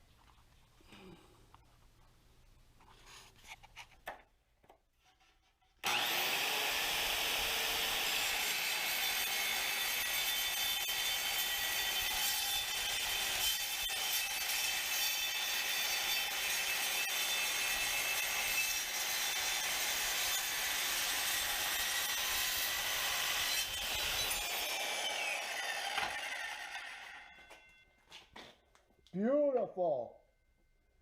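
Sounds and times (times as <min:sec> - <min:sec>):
circular saw cutting steel: 0:05.8 - 0:27.4.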